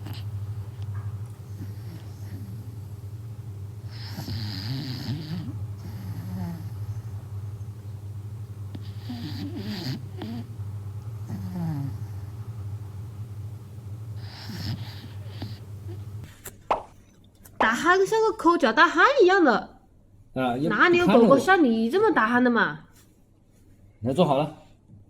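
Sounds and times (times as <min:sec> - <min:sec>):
dog snorting: 0:00.0 - 0:03.2, 0:03.8 - 0:07.3, 0:08.7 - 0:12.5, 0:14.1 - 0:16.2
dog snoring loudly: 0:00.0 - 0:07.9, 0:08.7 - 0:13.2, 0:14.0 - 0:16.2.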